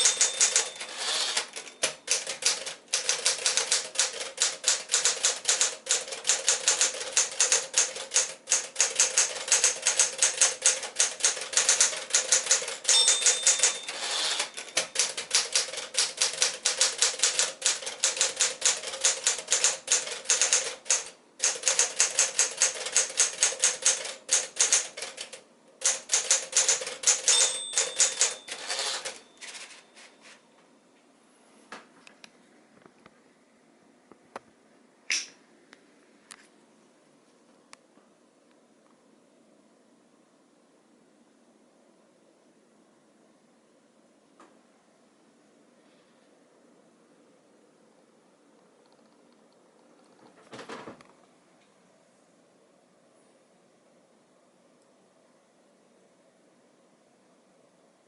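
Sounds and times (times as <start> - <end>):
typewriter margin bell ring: 0.0 - 25.2, 25.8 - 30.1
manual typewriter keystrokes: 0.0 - 29.8
typewriter carriage return: 0.0 - 30.4.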